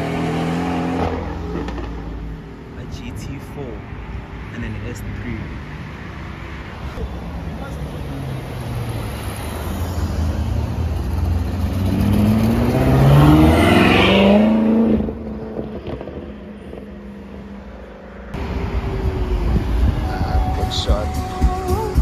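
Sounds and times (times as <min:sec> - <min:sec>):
car engine accelerating: 0:07.6 - 0:21.9.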